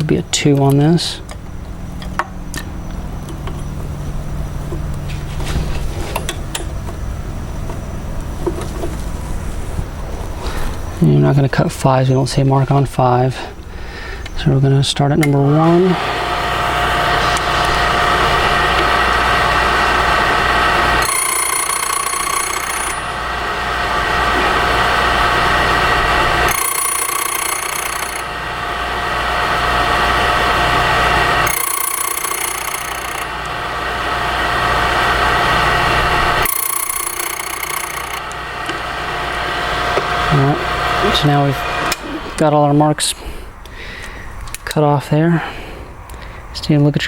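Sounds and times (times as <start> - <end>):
key-cutting machine running: 16.0 - 42.3.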